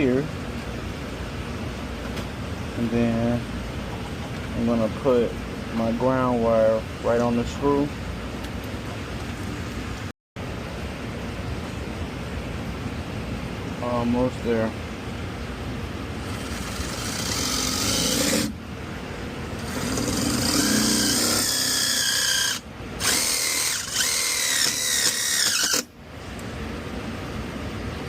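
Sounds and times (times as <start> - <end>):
cordless drill driving screw: 16.3 - 18.5, 19.6 - 25.9.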